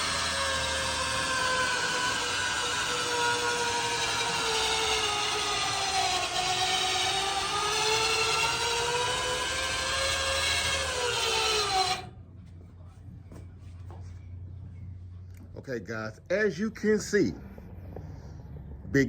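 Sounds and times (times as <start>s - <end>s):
lift motor running: 0.0s - 12.2s.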